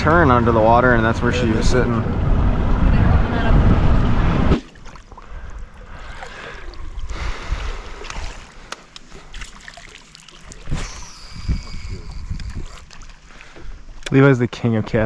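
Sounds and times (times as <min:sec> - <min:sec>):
water lapping against boat hull: 0:04.5 - 0:14.2.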